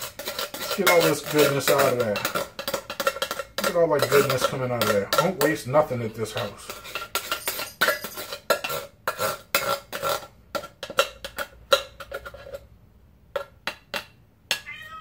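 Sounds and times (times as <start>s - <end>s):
utensil scraping inside metal can: 0.0s - 10.4s.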